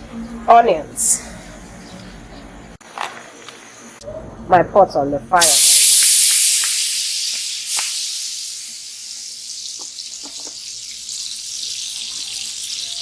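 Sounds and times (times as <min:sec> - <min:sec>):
oil sizzling in a hot pot: 0:05.4 - 0:13.0.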